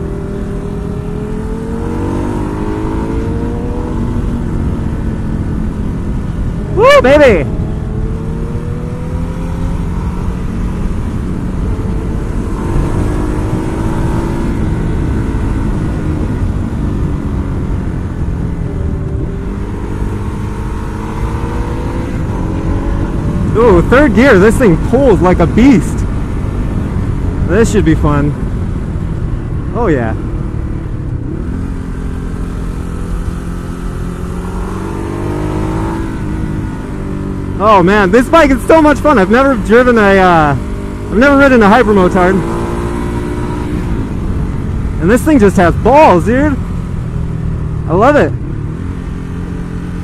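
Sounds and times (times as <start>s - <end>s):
wind rush over microphone: 0.0s - 32.0s
motorcycle engine accelerating: 0.0s - 50.0s.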